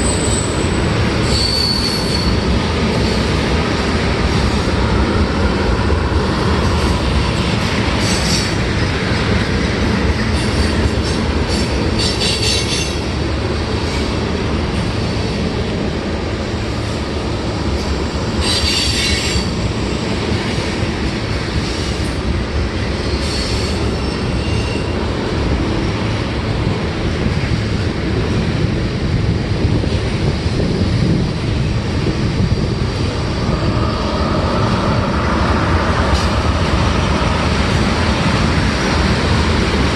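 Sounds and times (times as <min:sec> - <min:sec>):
wheel squeals: 0:00.0 - 0:02.4
freight train rumbling and clattering: 0:00.0 - 0:39.9.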